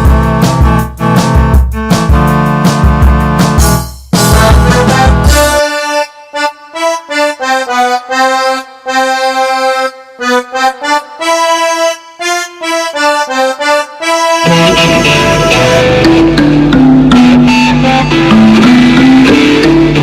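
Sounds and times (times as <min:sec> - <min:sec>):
band with bass and drums: 0:00.0 - 0:05.6, 0:14.4 - 0:20.0
accordion melody: 0:00.0 - 0:20.0.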